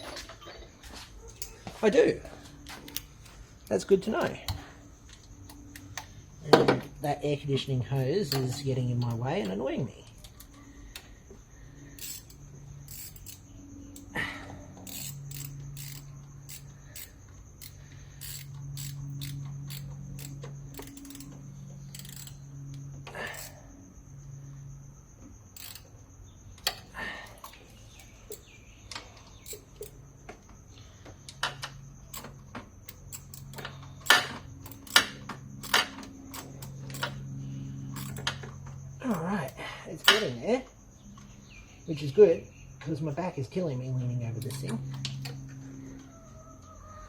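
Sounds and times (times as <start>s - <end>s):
tools clicking on metal: 7.9s - 9.6s, 12.0s - 14.1s, 14.7s - 23.5s, 25.6s - 25.9s, 26.6s - 30.0s, 31.4s - 37.3s, 38.0s - 38.5s, 39.5s - 40.4s, 44.4s - 45.3s.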